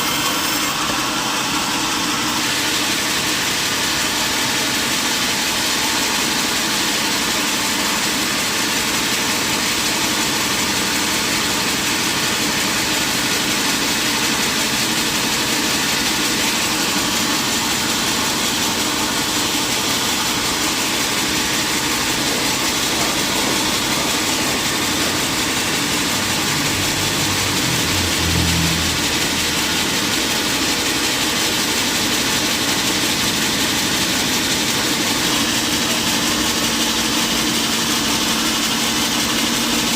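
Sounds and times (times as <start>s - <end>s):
sawmill machinery running: 0.0s - 39.9s
low hum: 25.6s - 30.0s.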